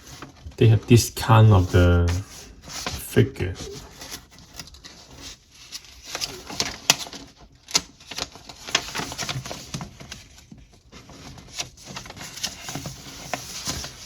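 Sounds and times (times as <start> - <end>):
paper pages rustling: 0.0 - 14.0.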